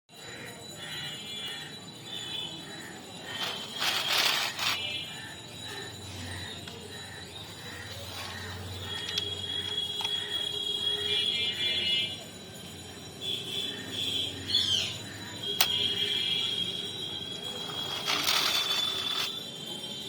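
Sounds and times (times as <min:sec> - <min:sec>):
toy gear mechanism whirring: 0:03.2 - 0:05.9, 0:07.0 - 0:10.7, 0:14.9 - 0:19.6.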